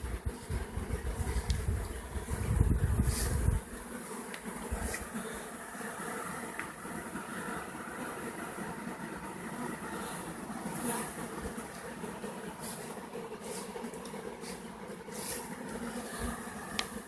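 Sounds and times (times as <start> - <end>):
honeybees droning: 0.0 - 17.0.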